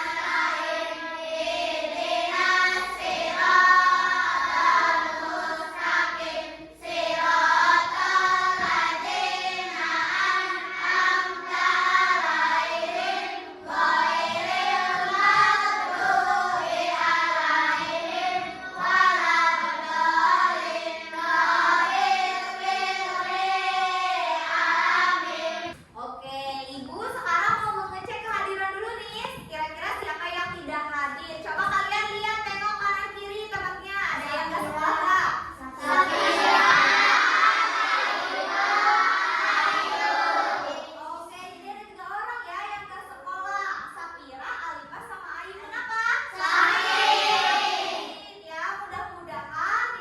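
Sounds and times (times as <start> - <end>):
children singing together: 0.0 - 25.8, 34.2 - 41.0, 46.3 - 48.3.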